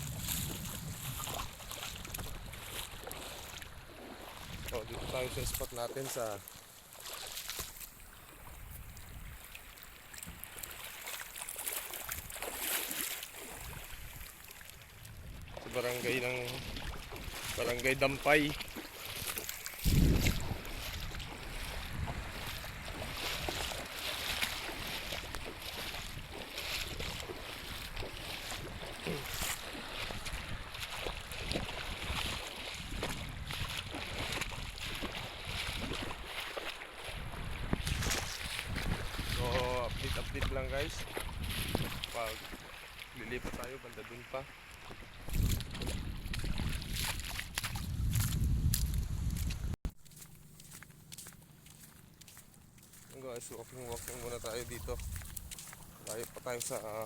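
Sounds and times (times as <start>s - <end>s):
wind on microphone: 0.0s - 3.6s, 8.4s - 9.5s, 13.6s - 36.3s, 37.1s - 42.6s, 44.9s - 49.8s, 53.8s - 55.9s.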